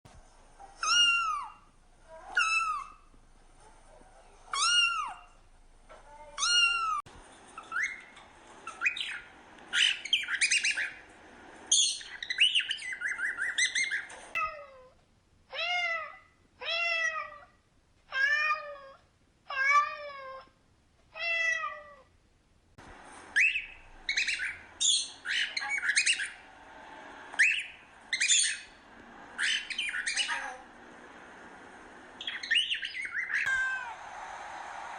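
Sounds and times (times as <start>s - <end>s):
cockatiel chirping and squawking: 0.8s - 1.6s, 2.3s - 3.0s, 4.5s - 5.3s, 6.4s - 7.0s, 7.6s - 11.0s, 11.7s - 14.2s, 23.3s - 26.4s, 27.4s - 28.8s, 29.4s - 30.6s, 32.2s - 33.9s
cat meowing: 15.5s - 20.5s, 21.2s - 22.1s, 33.4s - 34.0s.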